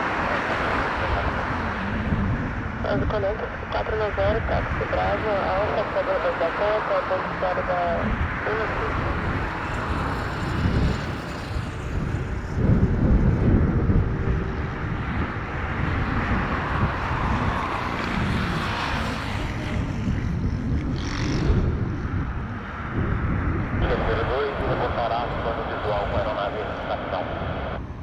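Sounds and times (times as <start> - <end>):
high whine: 0.0 - 9.9, 23.6 - 28.0
jet engines rumbling: 0.0 - 28.0.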